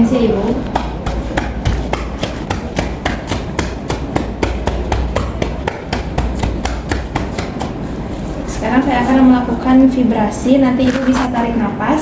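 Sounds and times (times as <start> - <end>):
hand clapping on a chest: 0.6 - 7.8.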